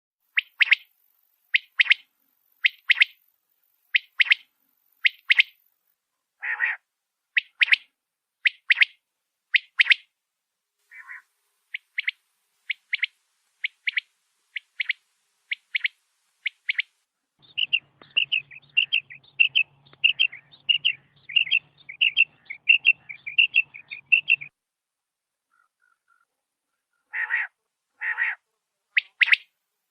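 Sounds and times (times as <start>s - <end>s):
quail calling: 6.4s - 6.8s, 7.4s - 9.0s, 9.6s - 10.1s, 10.9s - 24.5s, 26.9s - 28.4s, 29.0s - 29.5s.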